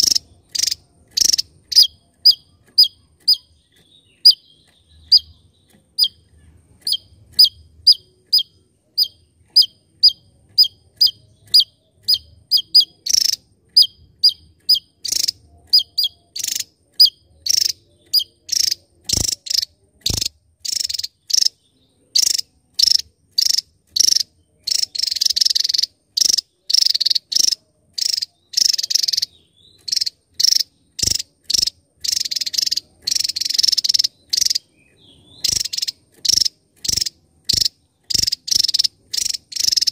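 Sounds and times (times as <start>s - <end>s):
sharp clicks: 9.6s - 21.5s, 22.2s - 34.7s, 35.4s - 39.9s.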